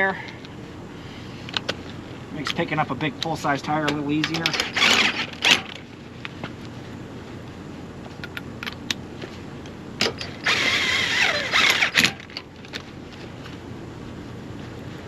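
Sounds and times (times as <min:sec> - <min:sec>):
impact wrench driving lug nuts: 0:04.3 - 0:05.8, 0:10.0 - 0:12.4.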